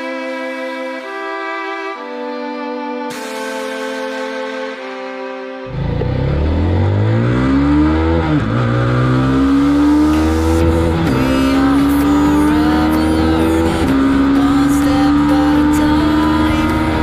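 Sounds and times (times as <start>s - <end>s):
motorcycle engine accelerating: 5.6s - 17.0s.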